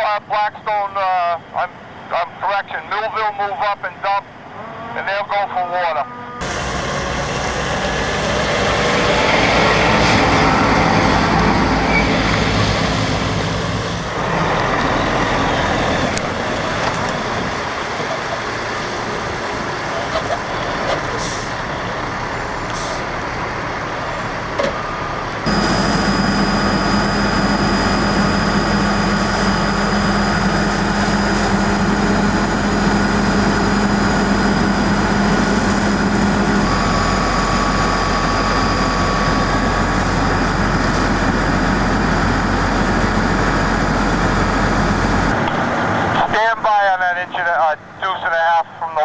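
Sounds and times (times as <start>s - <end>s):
diesel truck engine running: 6.4s - 46.8s.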